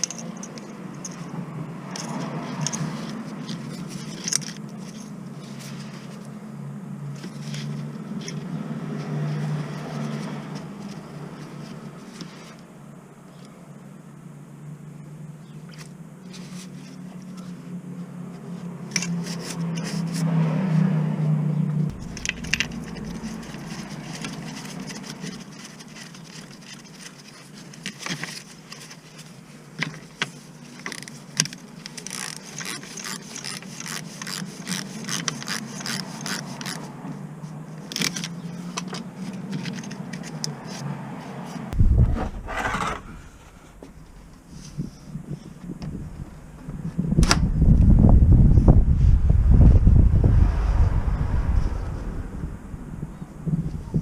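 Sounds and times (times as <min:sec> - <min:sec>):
steady low hum: 0:21.7 - 0:25.5, 0:41.7 - 0:54.0
metal objects scraping and clinking: 0:21.9 - 0:25.6, 0:42.1 - 0:44.2
heavy thump: 0:41.8 - 0:44.2.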